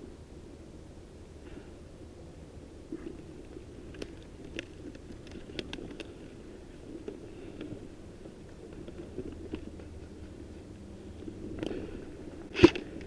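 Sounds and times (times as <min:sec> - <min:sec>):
light clicks and ticks: 0:03.4 - 0:13.0.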